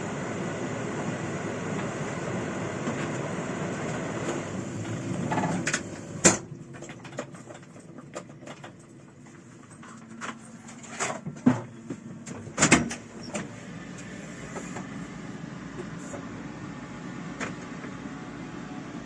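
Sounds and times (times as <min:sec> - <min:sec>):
harvest machine rumbling: 0:01.6 - 0:18.5.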